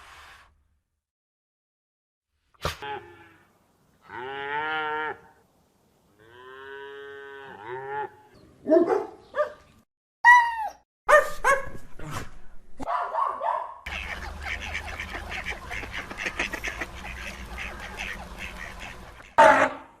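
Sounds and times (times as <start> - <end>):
animals calling: 13.9 - 19.8.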